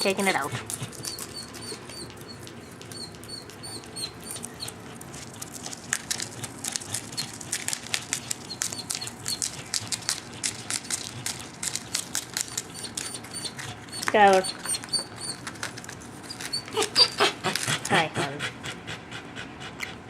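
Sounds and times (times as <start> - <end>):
lovebirds chirping: 1.0 - 4.8.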